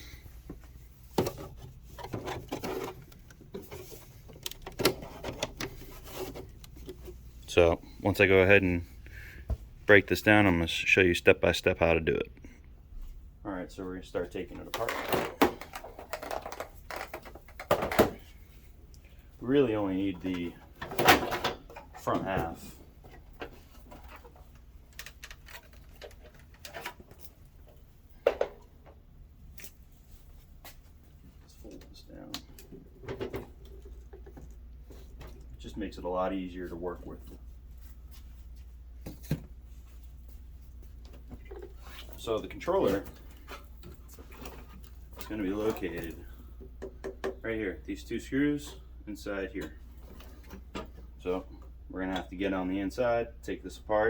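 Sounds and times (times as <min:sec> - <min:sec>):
plastic rubbing and scraping: 0:01.2 - 0:07.2.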